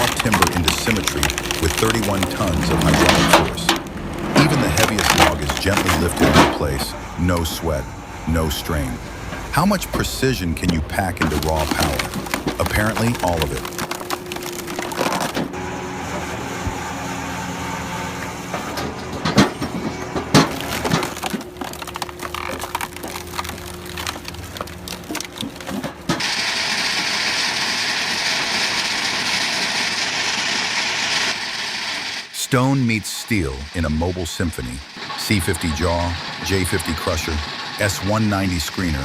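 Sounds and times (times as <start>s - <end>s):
logs cracking and splintering: 0.0s - 15.7s, 18.0s - 31.6s, 33.4s - 39.0s
hydraulic log splitter humming: 0.0s - 32.6s, 33.4s - 39.0s
steady hissing: 30.6s - 39.0s.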